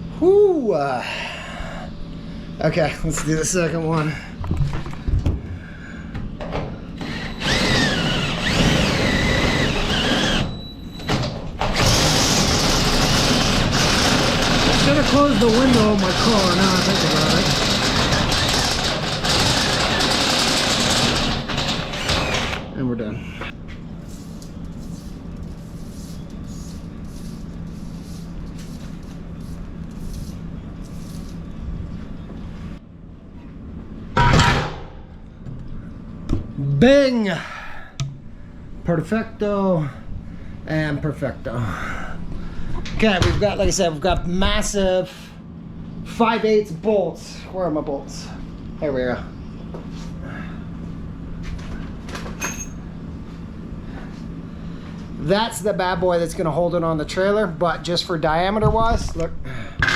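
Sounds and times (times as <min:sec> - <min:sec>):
low mechanical hum: 0:00.0 - 0:59.9
power drill boring into metal: 0:07.0 - 0:10.6, 0:11.6 - 0:22.6.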